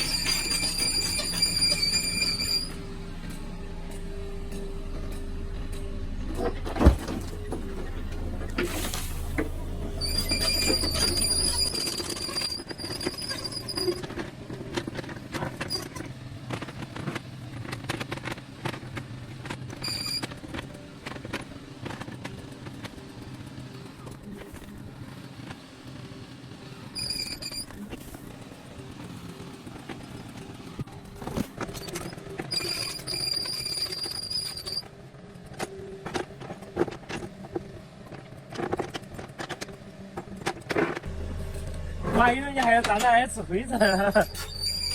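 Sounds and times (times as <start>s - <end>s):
high squeals: 0.0s - 3.0s, 9.9s - 14.1s, 31.8s - 34.9s, 43.0s - 44.9s
excavator engine humming: 0.0s - 44.9s.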